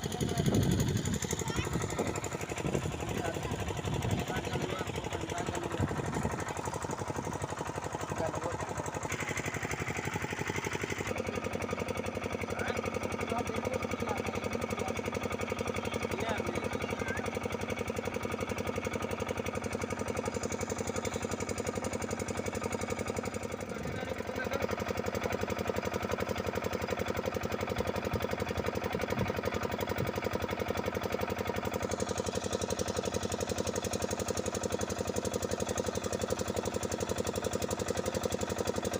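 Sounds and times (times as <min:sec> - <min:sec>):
machine running with fast pulse: 0:00.0 - 0:38.9.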